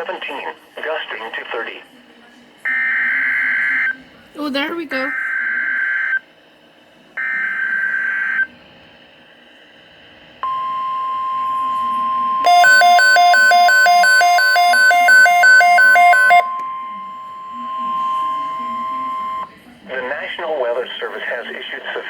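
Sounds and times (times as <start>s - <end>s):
rapid two-pitch electronic beeps: 10.4s - 19.5s
steady warning alarm tone: 10.4s - 19.6s.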